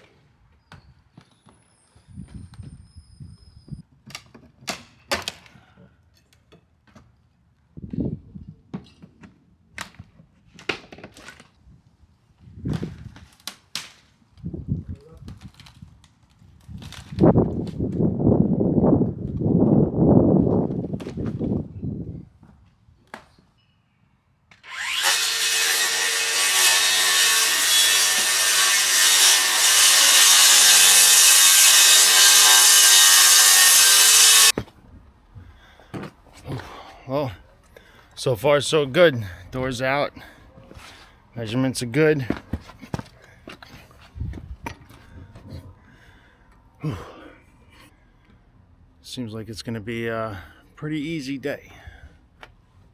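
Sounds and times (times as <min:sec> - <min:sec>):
power saw cutting wood: 0:24.5 - 0:34.5.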